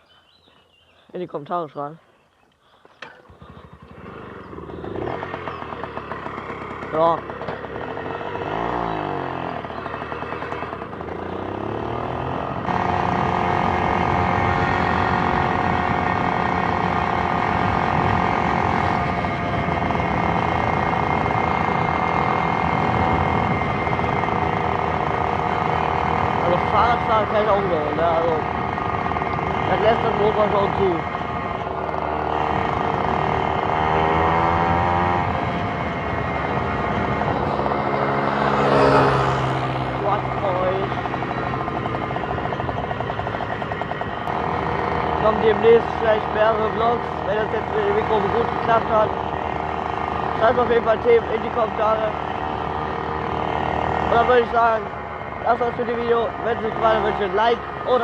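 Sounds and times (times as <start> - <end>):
moped engine revving: 3.0 - 58.0.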